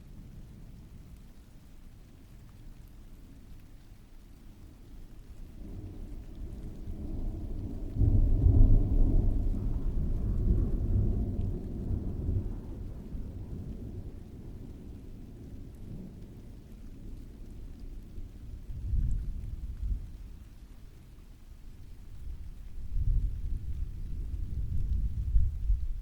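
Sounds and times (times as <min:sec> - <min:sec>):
steady rain: 0:00.0 - 0:26.0
thunder rumbling: 0:05.5 - 0:20.5, 0:21.8 - 0:26.0.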